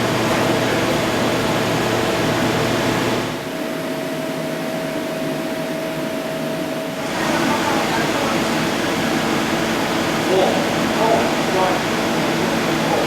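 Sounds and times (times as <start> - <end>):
lathe machine hum: 6.9 - 13.0.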